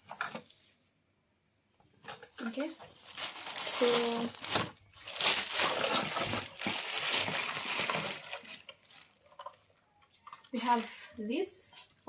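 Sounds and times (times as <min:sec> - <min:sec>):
packaging rustling and crinkling: 0:02.4 - 0:09.8.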